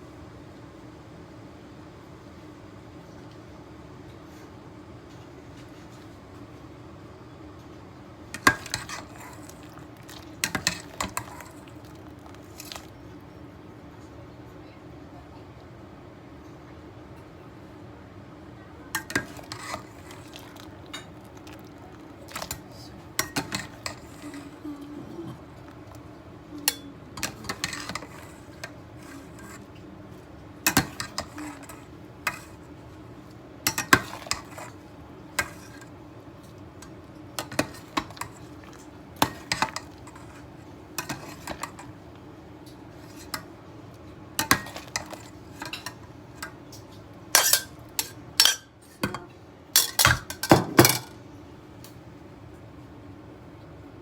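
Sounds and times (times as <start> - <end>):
steady low hum: 18.7 - 49.8
utensils clinking against dishes: 19.0 - 26.0, 26.6 - 29.7, 47.4 - 51.1.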